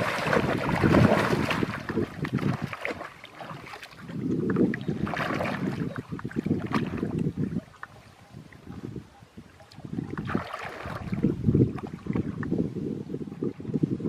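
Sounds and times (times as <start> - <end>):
water sloshing and splashing: 0.0 - 12.6.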